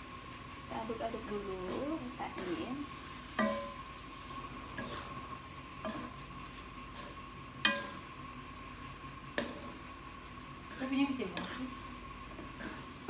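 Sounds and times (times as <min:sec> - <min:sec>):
noodles sizzling in a pan: 0:00.0 - 0:13.0.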